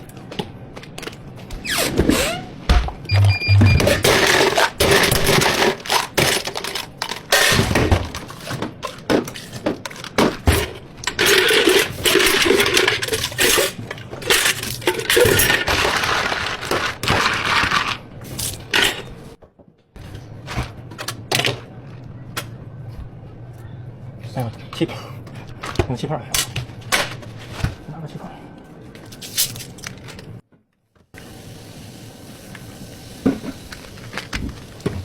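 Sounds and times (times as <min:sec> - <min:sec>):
cups and utensils clattering: 0:08.4 - 0:18.0.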